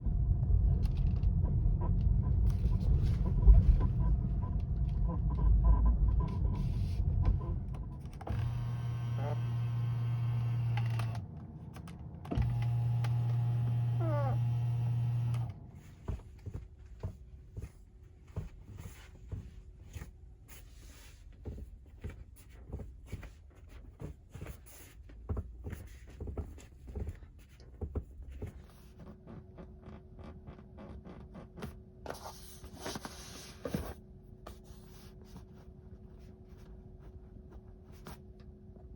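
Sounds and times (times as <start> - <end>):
low rumble of moving car: 0.0 - 20.1
power window motor: 8.2 - 11.2, 12.3 - 15.6
interior creaks and ticks: 21.4 - 32.0.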